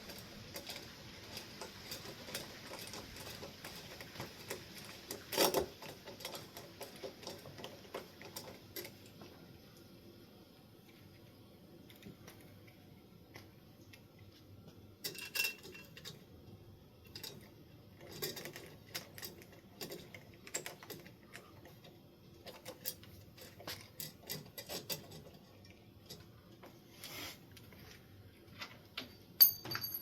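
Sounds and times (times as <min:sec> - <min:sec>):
metal hardware clicking and rattling: 0:15.0 - 0:16.3, 0:17.0 - 0:26.3, 0:29.0 - 0:30.0.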